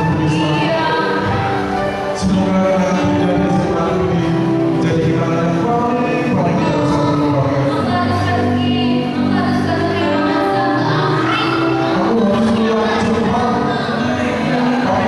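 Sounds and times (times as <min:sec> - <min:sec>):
person singing: 0:00.0 - 0:15.0.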